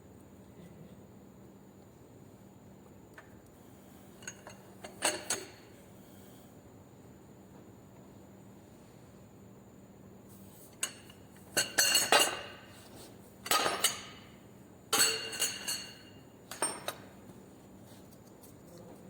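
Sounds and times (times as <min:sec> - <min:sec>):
metal tools clinking on metal: 0:10.8 - 0:12.6, 0:13.4 - 0:14.2, 0:14.9 - 0:17.1.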